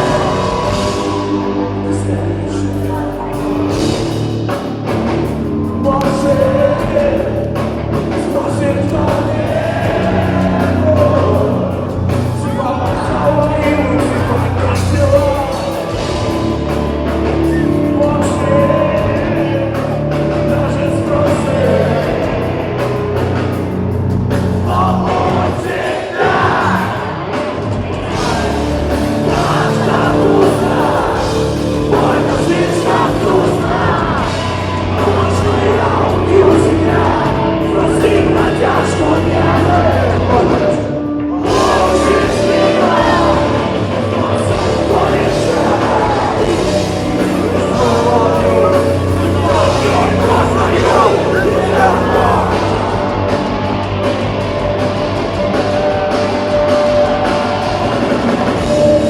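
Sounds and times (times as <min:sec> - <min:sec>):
heavy rock band playing live: 0:00.0 - 0:59.0
person singing: 0:05.7 - 0:23.2, 0:24.5 - 0:53.5.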